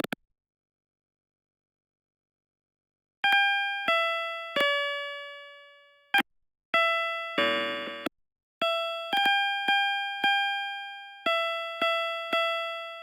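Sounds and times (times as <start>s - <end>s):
dense buzzing tone cluster: 7.4s - 8.1s
synthesized chime-like notes: 7.4s - 8.1s.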